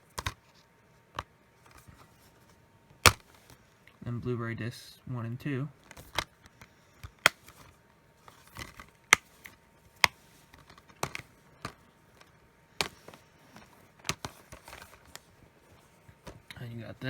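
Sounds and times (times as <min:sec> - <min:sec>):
plastic cases clicking: 0:00.1 - 0:00.4, 0:05.8 - 0:15.3.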